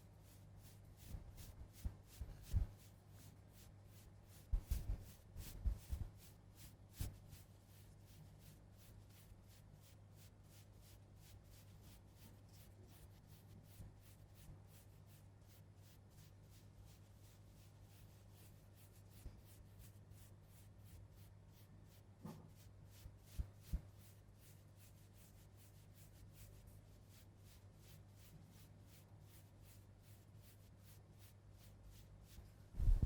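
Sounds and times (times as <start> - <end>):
low steady hum: 32.4 - 33.0.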